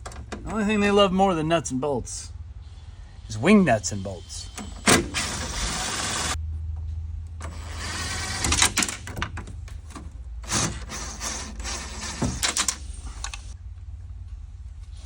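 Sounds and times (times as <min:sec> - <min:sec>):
low steady hum: 0:00.0 - 0:15.0
rustling and scraping of parts: 0:04.6 - 0:15.0.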